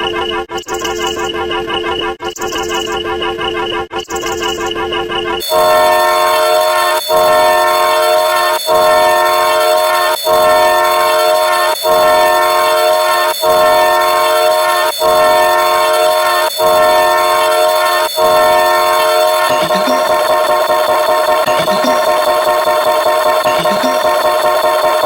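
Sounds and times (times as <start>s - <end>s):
train horn blasts: 5.4s - 22.0s.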